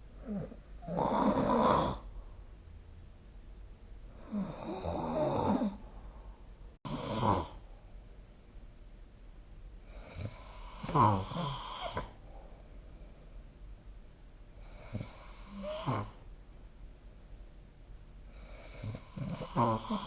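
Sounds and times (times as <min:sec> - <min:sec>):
quiet breathing: 0:00.0 - 0:02.8, 0:04.0 - 0:08.2, 0:09.8 - 0:16.4, 0:18.2 - 0:20.0
person snoring: 0:00.2 - 0:02.1, 0:04.2 - 0:05.8, 0:06.9 - 0:07.6, 0:09.9 - 0:12.2, 0:14.6 - 0:16.2, 0:18.3 - 0:20.0.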